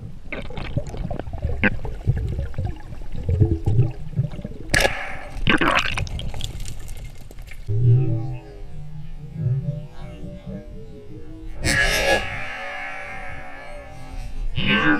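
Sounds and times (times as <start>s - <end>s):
rushes of bubbles: 0.0s - 7.7s
river current gurgling underwater: 0.3s - 7.7s.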